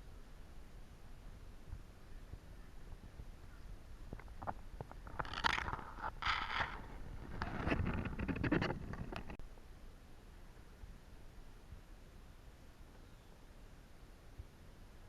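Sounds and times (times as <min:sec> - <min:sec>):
scraping and rustling: 0:04.2 - 0:09.4.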